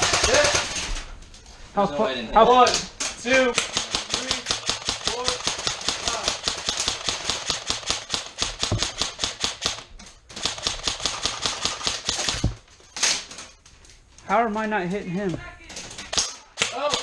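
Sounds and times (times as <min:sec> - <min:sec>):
airsoft rifle full-auto bursts: 0:00.0 - 0:00.8, 0:03.5 - 0:12.4.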